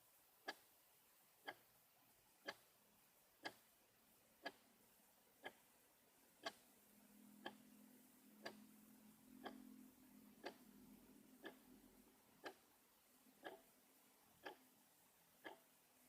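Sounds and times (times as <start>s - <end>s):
faint low hum: 0.0s - 16.0s
clock ticking: 0.4s - 0.7s, 1.4s - 1.7s, 2.4s - 2.7s, 3.4s - 3.7s, 4.4s - 4.7s, 5.4s - 5.7s, 6.4s - 6.6s, 7.4s - 7.6s, 8.4s - 8.6s, 9.4s - 9.7s, 10.3s - 11.8s, 12.4s - 12.8s, 13.4s - 14.7s, 15.3s - 15.8s.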